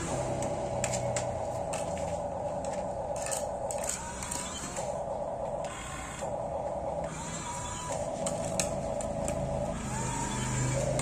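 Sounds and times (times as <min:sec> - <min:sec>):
toy gear motors whining: 0:03.2 - 0:11.0.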